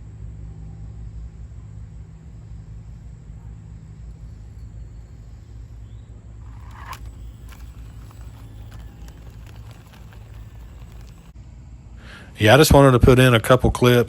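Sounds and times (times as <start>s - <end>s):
rc car motor humming: 1.2s - 11.4s
small ticks: 2.4s - 11.4s.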